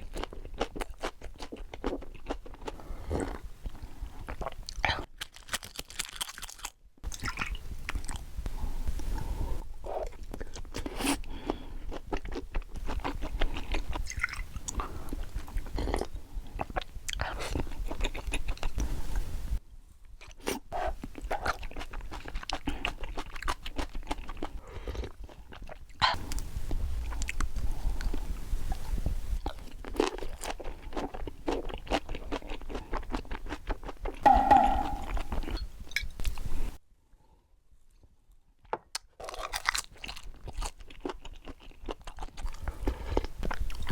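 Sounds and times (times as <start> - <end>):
person chewing with mouth clicks: 29.0 - 35.6.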